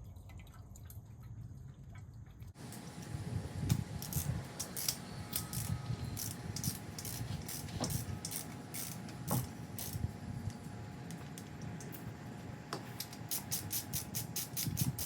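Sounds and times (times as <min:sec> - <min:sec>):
ratchet wrench clicking: 0:04.0 - 0:10.0, 0:13.0 - 0:15.0.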